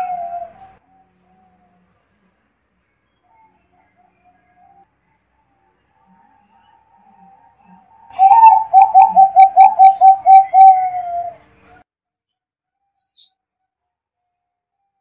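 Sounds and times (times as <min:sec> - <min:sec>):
dove cooing: 0:00.0 - 0:00.8, 0:07.7 - 0:11.4.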